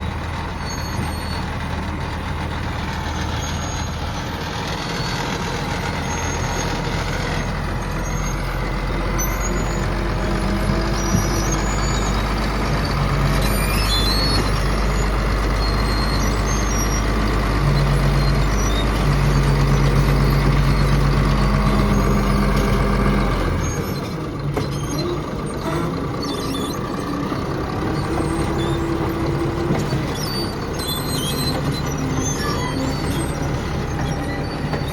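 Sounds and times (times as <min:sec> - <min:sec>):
heavy vehicle engines droning: 0:00.0 - 0:34.9.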